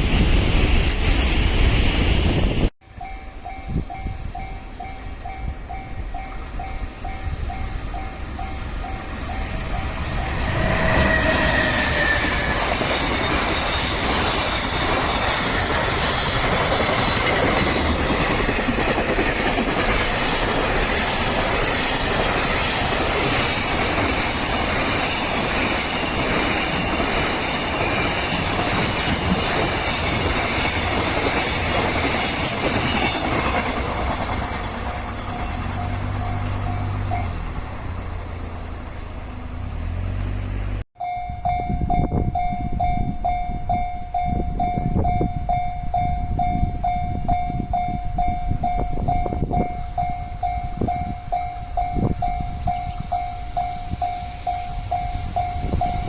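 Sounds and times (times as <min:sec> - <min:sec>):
freight train passing: 0:00.0 - 0:56.0
level crossing warning bell: 0:02.8 - 0:10.5, 0:12.3 - 0:38.3, 0:41.0 - 0:56.0
wagons clacking over rails: 0:05.8 - 0:40.0.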